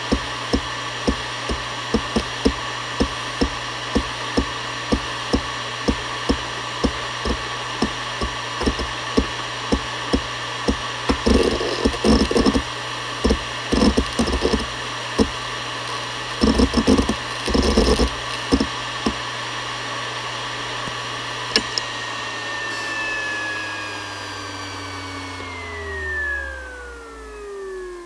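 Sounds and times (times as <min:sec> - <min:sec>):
hard drive heads clicking: 0:00.0 - 0:19.2
hard drive spinning whine: 0:00.0 - 0:28.0.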